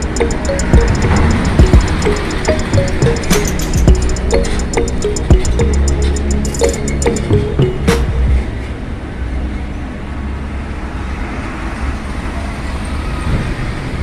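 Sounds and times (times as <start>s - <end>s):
low engine rumble: 0.0s - 9.8s
road traffic passing: 0.0s - 14.0s.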